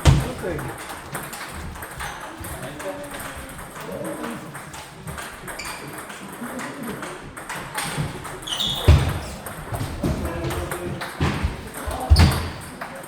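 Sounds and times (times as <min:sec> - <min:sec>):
heavy thump: 0:00.0 - 0:00.8
table tennis ball clicking: 0:00.7 - 0:08.6.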